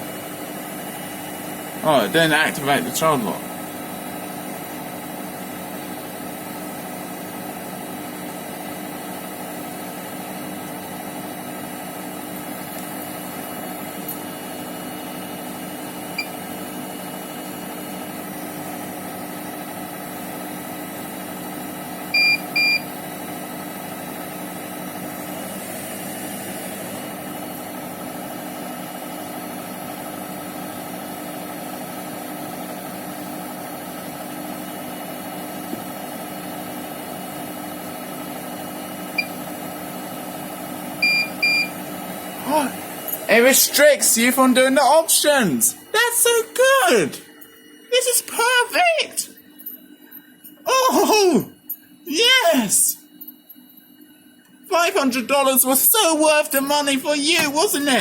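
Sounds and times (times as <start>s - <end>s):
washing machine humming: 0.0s - 58.0s
control panel beeps: 41.0s - 41.8s.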